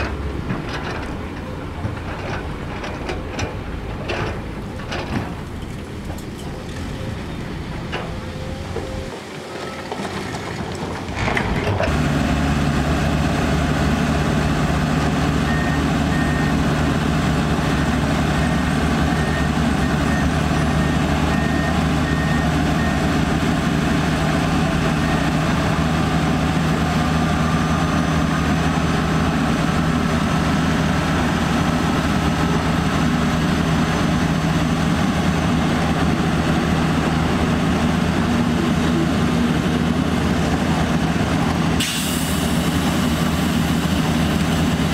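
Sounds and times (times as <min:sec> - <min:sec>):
diesel truck engine running: 0:00.0 - 0:44.9
reversing alarm beeping: 0:08.0 - 0:09.9, 0:18.4 - 0:23.1.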